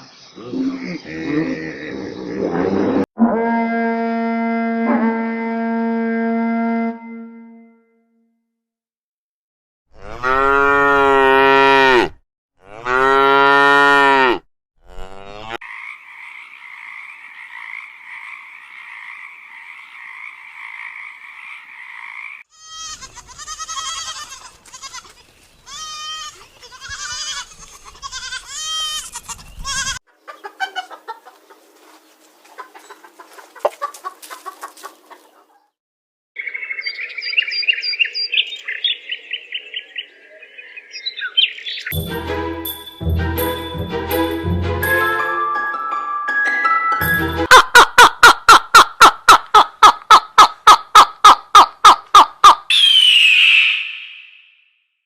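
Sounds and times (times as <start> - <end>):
cattle mooing: 10.0 - 15.6.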